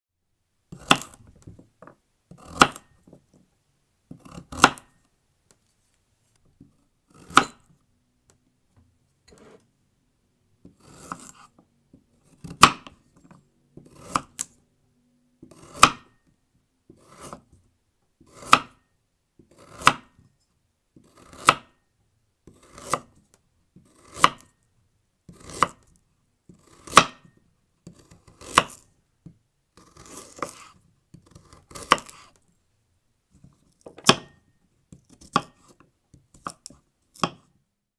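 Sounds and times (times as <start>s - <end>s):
knife chopping carrot on board: 0.7s - 1.7s, 2.3s - 3.2s, 4.1s - 5.0s, 7.1s - 7.7s, 10.6s - 14.6s, 15.4s - 16.2s, 16.9s - 17.6s, 18.2s - 18.8s, 19.4s - 20.2s, 21.0s - 21.8s, 22.5s - 23.2s, 23.8s - 24.5s, 25.3s - 25.9s, 26.5s - 32.4s, 33.4s - 37.5s.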